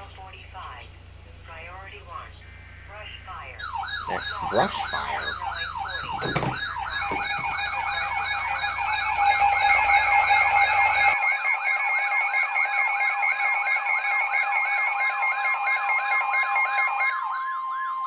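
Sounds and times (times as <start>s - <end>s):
low hum: 0.0s - 11.2s
electronic siren tones: 2.1s - 18.0s
steady alert tone: 3.6s - 11.2s.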